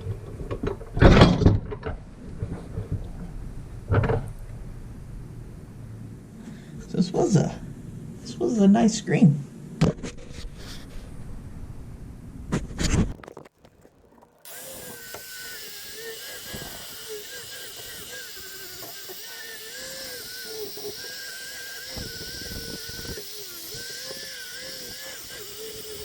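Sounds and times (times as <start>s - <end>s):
power tool running on metal: 14.4s - 26.0s
steady hiss: 14.4s - 26.0s.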